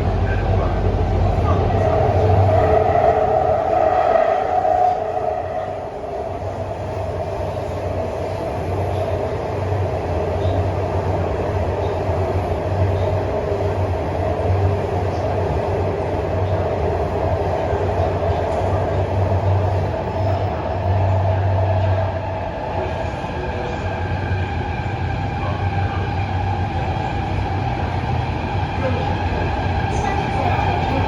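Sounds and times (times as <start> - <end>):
metro train hum and rumble: 0.0 - 31.0.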